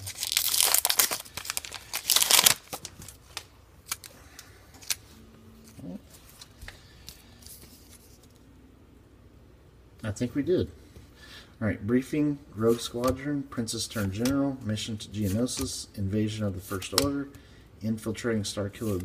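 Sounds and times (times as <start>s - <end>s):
foil wrapper tearing and crinkling: 0.0s - 4.1s.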